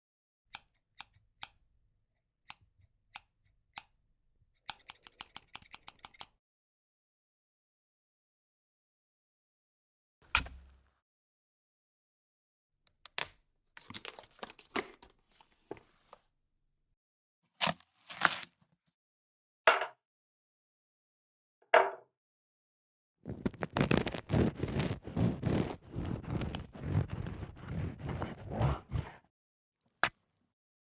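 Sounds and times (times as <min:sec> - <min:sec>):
knife chopping on board: 0:23.9 - 0:29.2.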